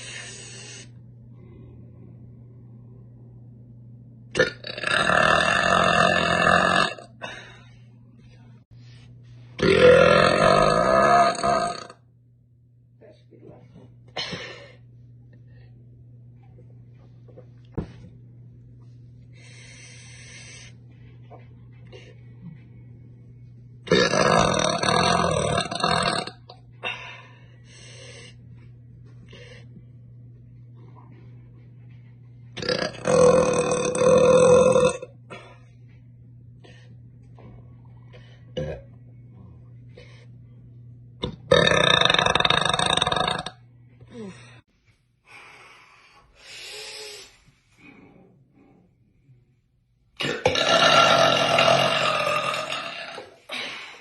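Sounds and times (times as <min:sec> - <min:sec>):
woman burping: 0:04.4 - 0:07.2, 0:50.2 - 0:53.8.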